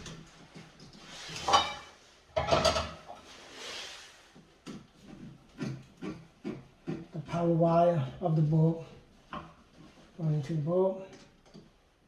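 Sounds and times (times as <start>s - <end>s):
scraping and rustling wires: 0.0s - 7.5s.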